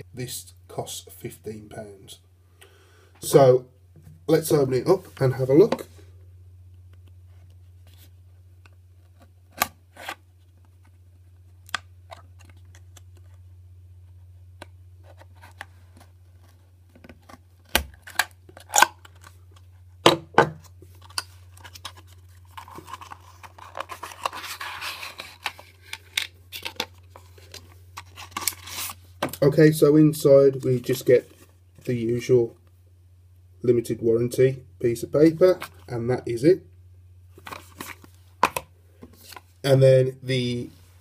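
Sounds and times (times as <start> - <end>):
steady low hum: 0.0 - 41.0
packaging tearing and rustling: 21.0 - 29.1.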